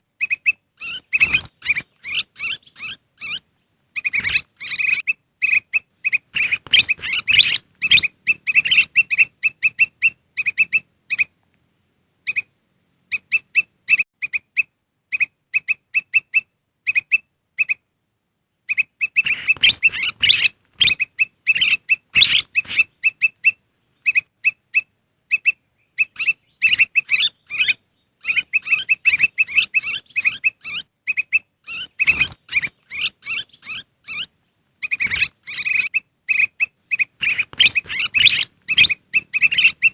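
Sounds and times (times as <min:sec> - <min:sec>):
bulbul chirping: 0:00.2 - 0:03.4, 0:04.0 - 0:11.3, 0:18.7 - 0:24.6, 0:25.3 - 0:39.9.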